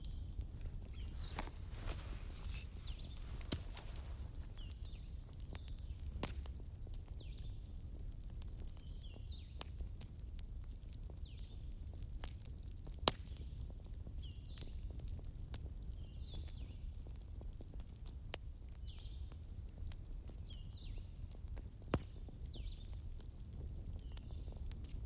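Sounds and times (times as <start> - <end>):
fire pops: 0.0 - 6.5
wood fire crackling: 0.0 - 8.9.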